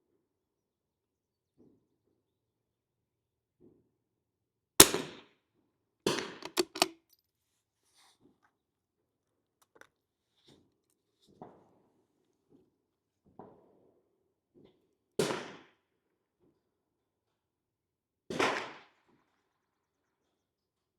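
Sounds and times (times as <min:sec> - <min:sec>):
rifle shot cracks: 0:04.8 - 0:05.1
sharp clicks: 0:06.3 - 0:07.0.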